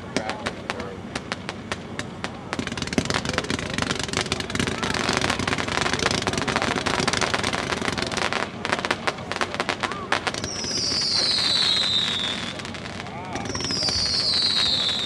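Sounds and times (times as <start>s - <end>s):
fireworks firing rapidly: 0.0s - 15.0s
high falling whistle: 13.6s - 15.0s.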